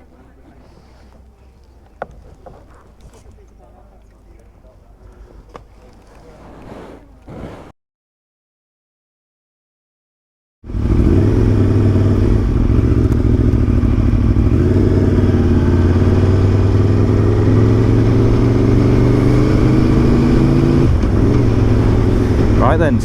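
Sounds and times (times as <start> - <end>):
motorcycle engine running: 10.7 - 23.0.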